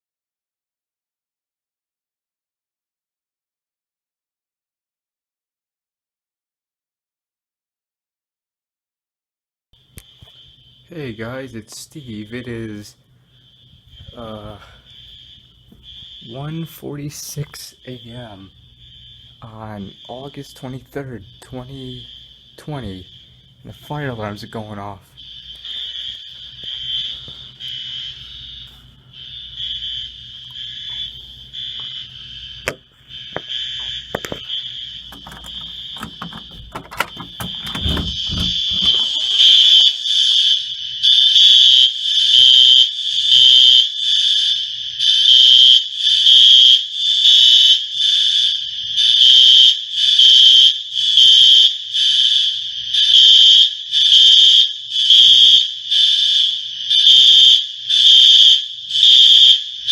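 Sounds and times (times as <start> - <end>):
fire alarm pulsing tone: 9.8 - 59.9
knocks and clicks: 35.1 - 39.0.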